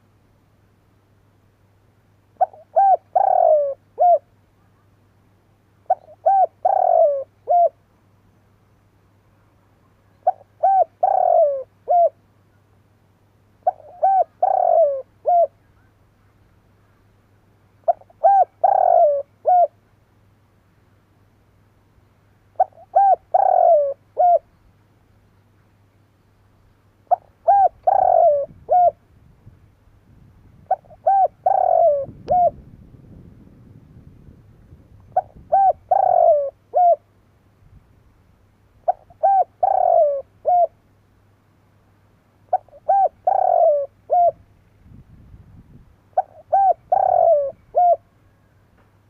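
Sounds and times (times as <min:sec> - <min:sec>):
dove cooing: 0:02.4 - 0:04.9, 0:05.8 - 0:07.8, 0:10.1 - 0:12.2, 0:13.6 - 0:16.0, 0:17.8 - 0:19.8, 0:22.6 - 0:24.5, 0:27.0 - 0:29.0, 0:30.6 - 0:32.6, 0:35.0 - 0:37.1, 0:38.8 - 0:40.8, 0:42.5 - 0:44.4, 0:46.2 - 0:48.2.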